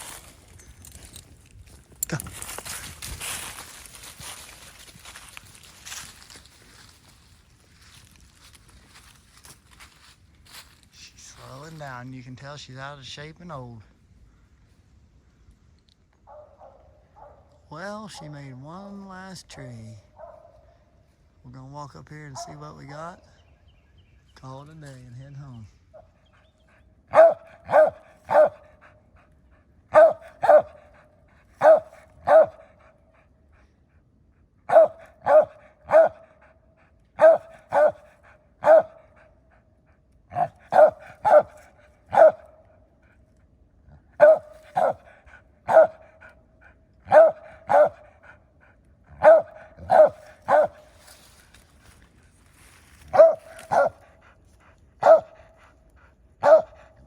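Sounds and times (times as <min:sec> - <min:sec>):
dog barking: 0:16.3 - 0:17.6, 0:20.1 - 0:20.8, 0:22.3 - 0:22.7, 0:27.1 - 0:28.8, 0:29.9 - 0:31.0, 0:31.6 - 0:32.8, 0:34.7 - 0:36.4, 0:37.2 - 0:39.1, 0:40.3 - 0:42.6, 0:44.2 - 0:46.2, 0:47.0 - 0:48.2, 0:49.1 - 0:50.9, 0:53.0 - 0:54.2, 0:55.0 - 0:55.5, 0:56.4 - 0:57.0.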